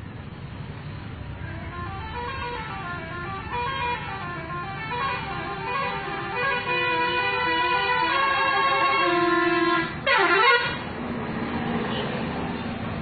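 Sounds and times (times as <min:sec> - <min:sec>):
low traffic rumble: 0:00.0 - 0:13.0
multi-tone horn tune: 0:01.4 - 0:10.8.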